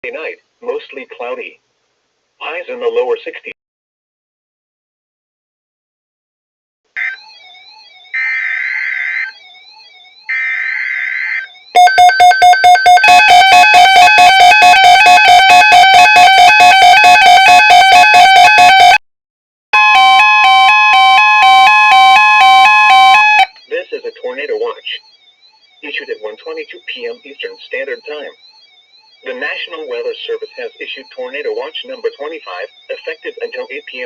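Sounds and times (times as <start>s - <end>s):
fast-pulsing alarm tone: 7.0s - 19.0s, 19.8s - 34.0s
steady alert tone: 19.8s - 34.0s.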